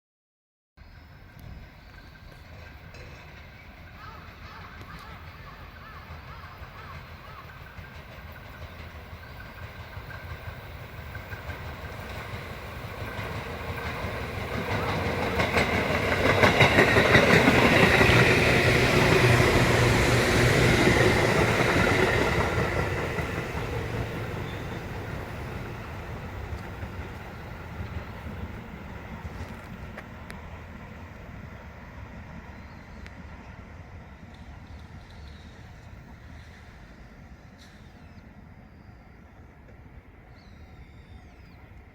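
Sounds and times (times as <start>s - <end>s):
electric train passing: 0.8s - 41.9s
wheels clacking over rail joints: 2.3s - 30.6s.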